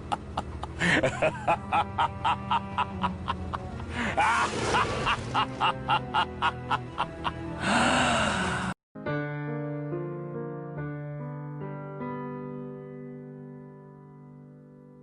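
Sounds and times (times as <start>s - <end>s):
piano tune: 9.0s - 15.0s.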